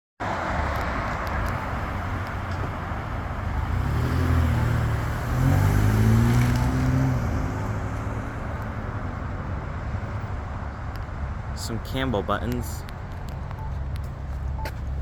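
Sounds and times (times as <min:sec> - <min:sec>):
vehicle engine hum passing: 0:00.2 - 0:11.6
tyre and road noise: 0:00.2 - 0:15.0.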